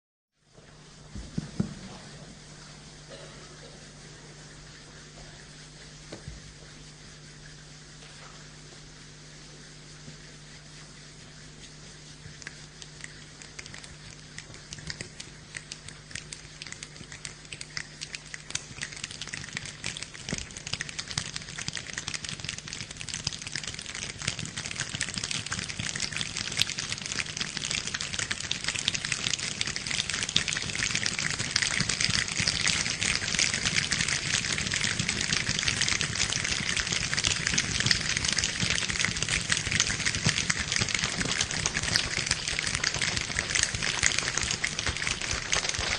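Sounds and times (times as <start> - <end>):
rain falling: 13.2 - 45.9.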